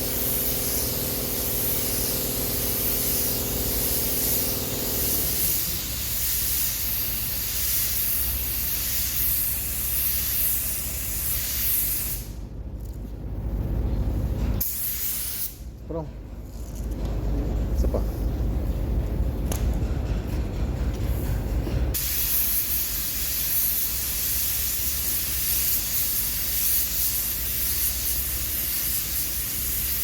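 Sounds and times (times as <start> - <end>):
spray gun hissing: 0.0 - 12.3, 14.6 - 15.6, 22.0 - 30.0.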